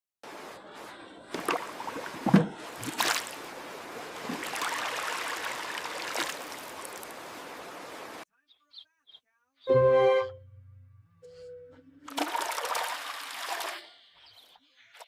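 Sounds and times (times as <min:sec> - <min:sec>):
running water rushing: 0:00.3 - 0:08.2.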